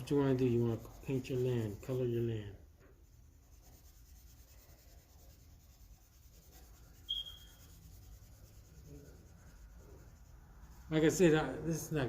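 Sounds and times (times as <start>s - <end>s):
colouring strokes on paper: 0.0s - 12.0s
short high chirp: 7.1s - 7.7s.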